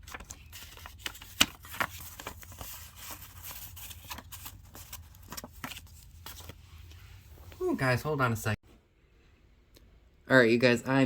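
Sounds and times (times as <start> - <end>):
paper rustling: 0.0 - 7.6.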